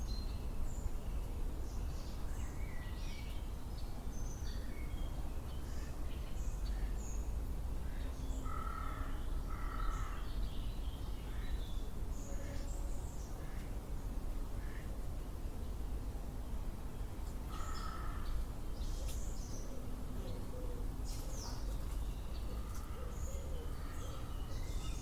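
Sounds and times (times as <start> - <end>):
wild birds chirping: 4.2 - 13.7, 17.4 - 25.0.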